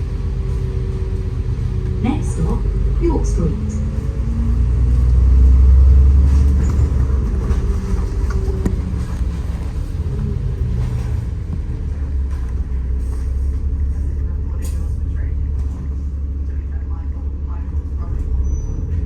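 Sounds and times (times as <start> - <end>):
bus engine and road rumble: 0.0 - 19.0.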